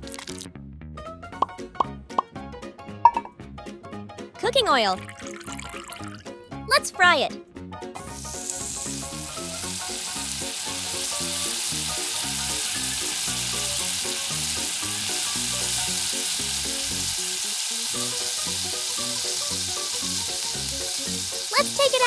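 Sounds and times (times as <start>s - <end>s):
oil sizzling deep-frying food: 0.0s - 0.5s, 8.0s - 22.0s.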